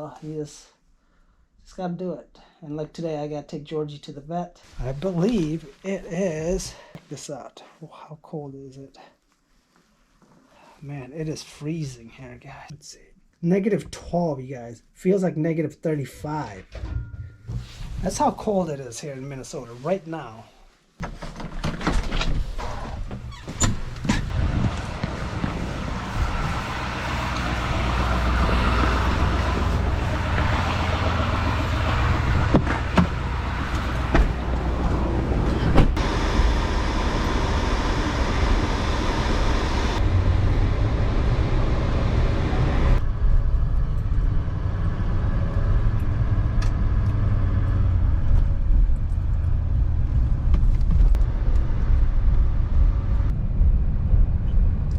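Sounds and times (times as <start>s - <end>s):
vehicle engine humming: 23.4s - 54.9s.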